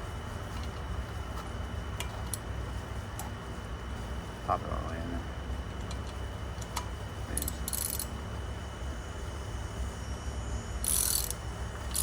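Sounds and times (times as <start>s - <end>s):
steady low rumble: 0.0s - 12.0s
ratchet wrench clicking: 2.0s - 2.4s, 5.8s - 8.2s, 10.8s - 12.0s.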